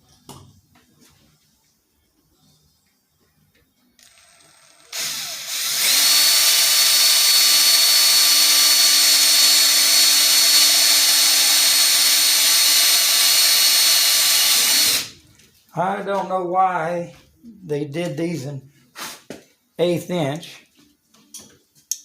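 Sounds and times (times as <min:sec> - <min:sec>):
power drill whining: 0:04.0 - 0:15.2.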